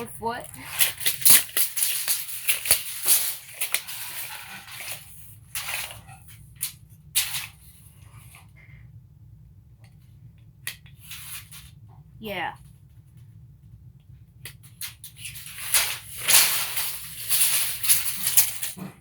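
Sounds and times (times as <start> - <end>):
tape measure blade rattling: 0.0 - 7.5, 14.8 - 18.9.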